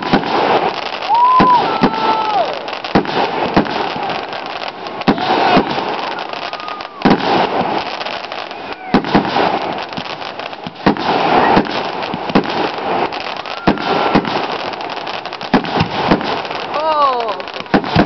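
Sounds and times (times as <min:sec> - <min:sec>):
fireworks short whistles: 0:00.0 - 0:03.9, 0:05.0 - 0:09.9, 0:10.6 - 0:14.7
fireworks crackling: 0:00.0 - 0:18.0
fireworks sharp bangs: 0:00.0 - 0:18.0.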